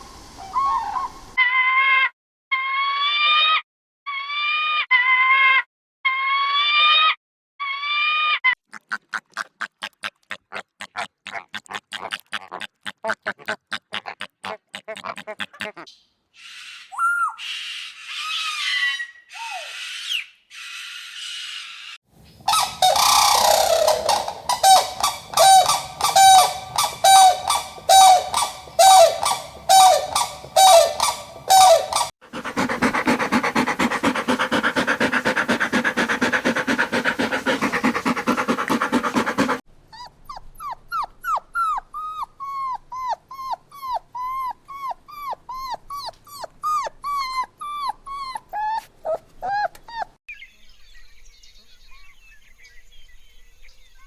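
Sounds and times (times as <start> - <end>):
animal yelps: 0.4 - 5.6, 7.8 - 50.1
brief high animal calls: 22.5 - 39.6
puppy whimpering: 22.5 - 50.2.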